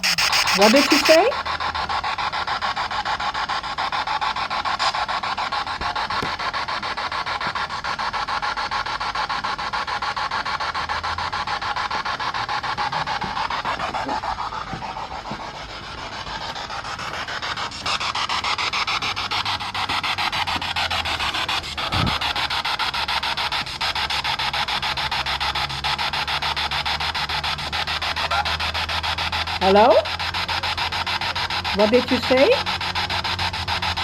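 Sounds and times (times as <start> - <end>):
choppy radio static: 0.0 - 1.3.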